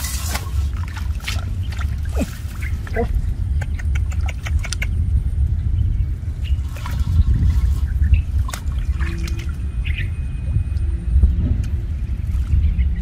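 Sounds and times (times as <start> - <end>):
water trickling and splashing: 0.0 - 4.9, 6.4 - 10.1
steady low rumble: 0.0 - 13.0.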